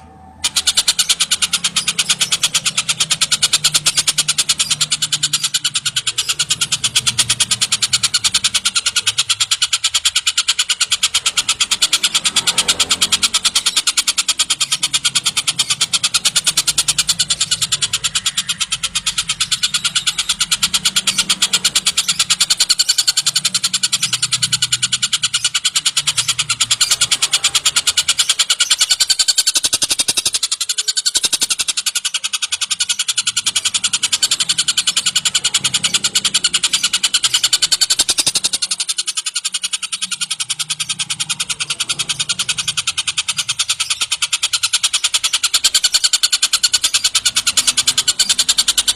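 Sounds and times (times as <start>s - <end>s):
kingfisher chattering call: 0.0s - 48.9s.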